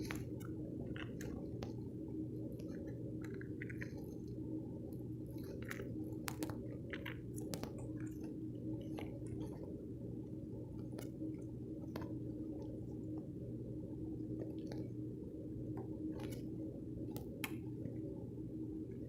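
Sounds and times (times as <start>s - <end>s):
person chewing close to microphone: 0.0s - 9.8s, 16.2s - 16.5s
steady low hum: 0.0s - 19.0s.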